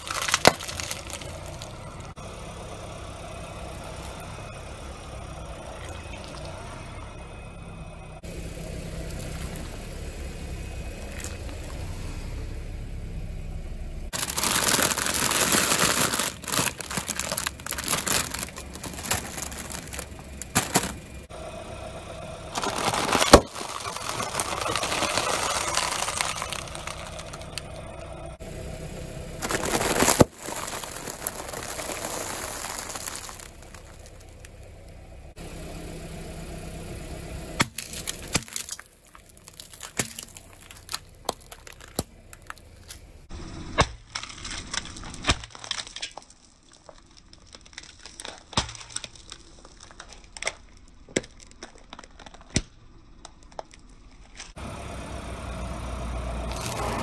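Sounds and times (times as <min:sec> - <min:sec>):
sharp cracks and crackles: 0:00.0 - 0:02.2, 0:14.1 - 0:21.3, 0:22.5 - 0:28.2, 0:29.4 - 0:35.0, 0:37.6 - 0:43.1, 0:43.7 - 0:54.6
tire crushing crunchy objects: 0:00.0 - 0:57.0.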